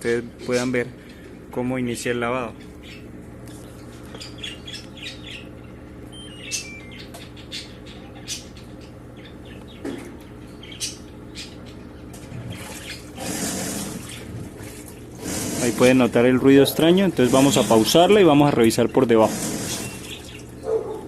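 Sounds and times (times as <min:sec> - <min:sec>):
washing machine hum: 0:00.0 - 0:21.0
water filling: 0:12.4 - 0:18.3, 0:19.1 - 0:20.6.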